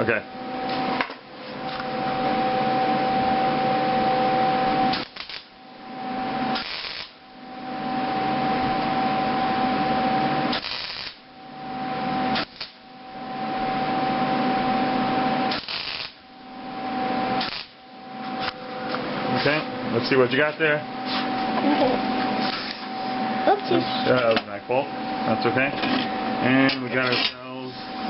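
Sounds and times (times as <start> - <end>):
welder whine: 0.0 - 28.0
welder arc crackling and hissing: 4.6 - 5.6, 6.5 - 7.3, 10.4 - 11.3, 12.3 - 12.9, 15.4 - 18.6, 26.5 - 28.0.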